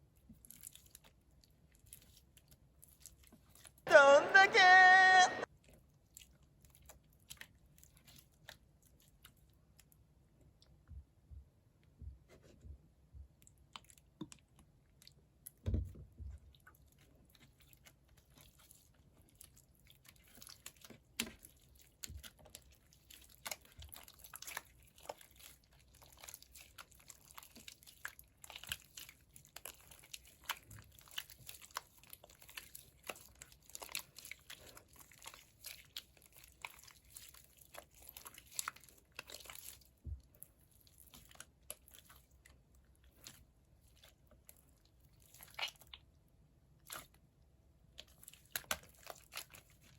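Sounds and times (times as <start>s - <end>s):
slime squishing with sticky clicks: 19.4s - 49.9s.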